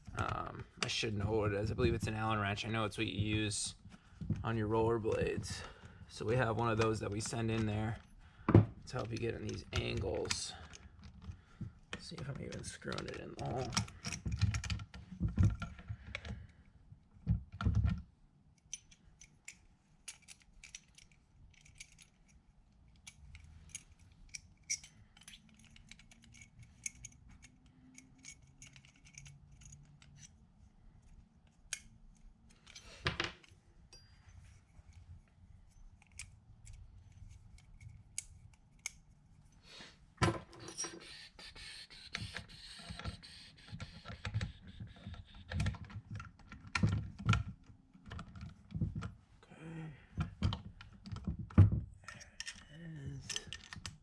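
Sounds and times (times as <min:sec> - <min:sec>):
small metal clicks and rattles: 0:08.9 - 0:16.5, 0:18.6 - 0:30.4, 0:52.1 - 0:54.0.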